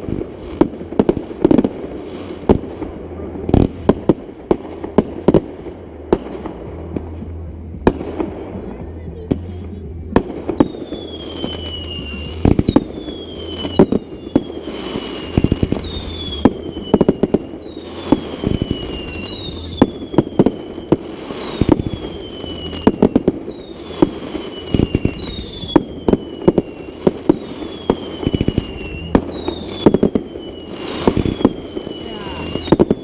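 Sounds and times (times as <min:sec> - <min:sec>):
fireworks bangs and crackling: 0:00.0 - 0:33.0
whistling firework shells: 0:10.5 - 0:33.0.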